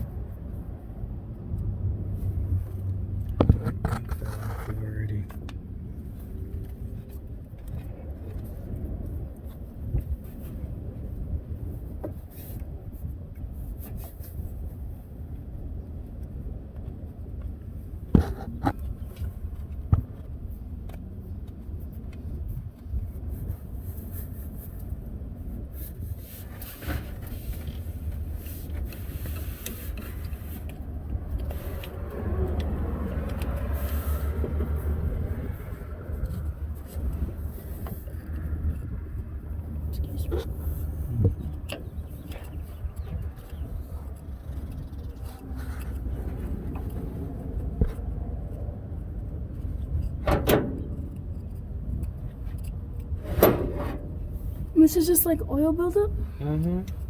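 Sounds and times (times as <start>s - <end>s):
low steady rumble: 0.0s - 57.0s
scraping grime off metal: 50.2s - 54.6s.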